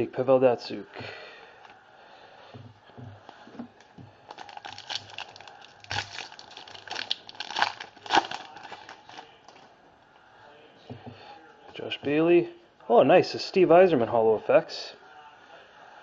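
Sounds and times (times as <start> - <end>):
wrapper crinkling and tearing: 4.3 - 9.6.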